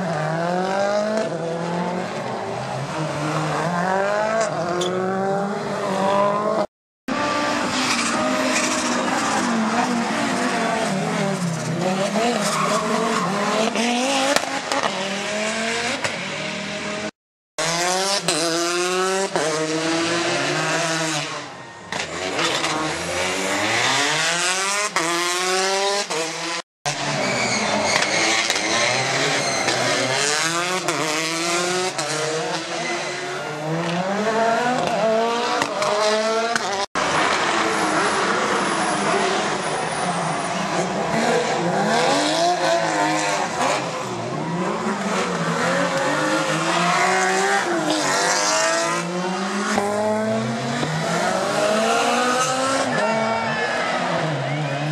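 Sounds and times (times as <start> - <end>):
rally car engines revving: 0.0 - 54.9
tyre squeal: 11.4 - 13.9, 27.0 - 30.2, 32.6 - 33.5.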